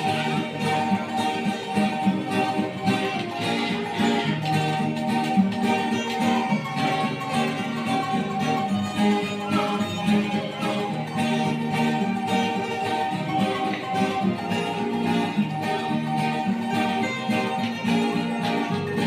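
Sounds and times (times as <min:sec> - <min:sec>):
plucked acoustic guitar: 0:00.0 - 0:19.0.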